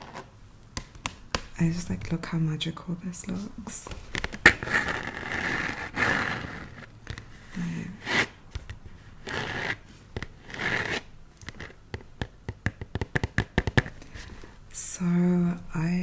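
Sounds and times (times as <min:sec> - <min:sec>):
hands rubbing a box: 0:03.3 - 0:06.9, 0:07.8 - 0:11.8.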